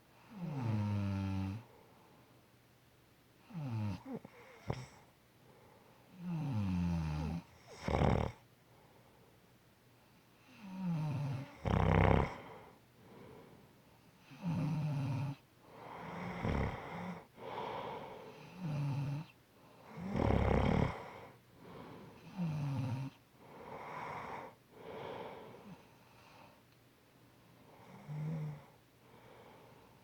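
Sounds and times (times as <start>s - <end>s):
loud snoring: 0.3s - 1.7s, 3.5s - 5.0s, 6.2s - 8.4s, 10.6s - 12.5s, 14.4s - 15.4s, 16.0s - 17.6s, 18.5s - 19.3s, 19.9s - 21.3s, 22.3s - 23.2s, 27.8s - 28.7s
soft breath: 1.6s - 2.4s, 4.6s - 6.1s, 8.6s - 10.4s, 12.3s - 14.1s, 15.6s - 18.6s, 20.9s - 22.4s, 23.4s - 26.7s, 27.4s - 30.0s.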